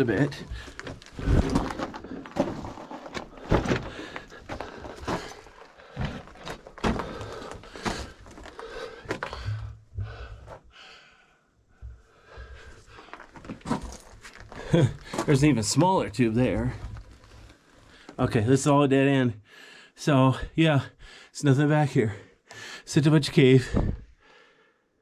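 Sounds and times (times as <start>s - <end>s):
gear knocking and rubbing on rock: 0.0s - 9.5s
person crawling through rock tube: 0.0s - 10.8s, 11.8s - 18.7s.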